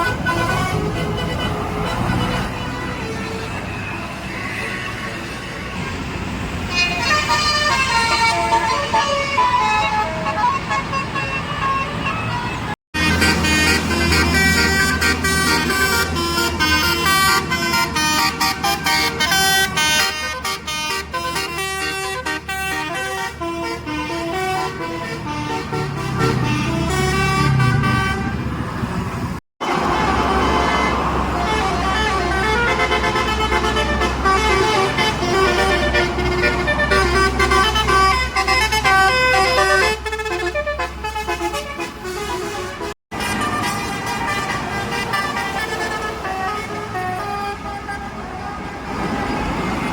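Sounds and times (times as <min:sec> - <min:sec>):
multi-tone musical air horns: 0:00.0 - 0:28.5, 0:29.6 - 0:49.4
bus engines running: 0:00.0 - 0:49.9.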